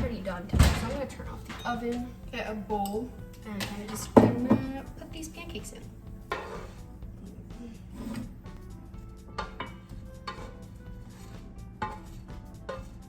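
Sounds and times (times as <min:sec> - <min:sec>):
utensil clinking on pan and bowl: 0:00.0 - 0:04.9, 0:06.3 - 0:06.8, 0:09.3 - 0:13.0
quiet background music: 0:00.0 - 0:13.0.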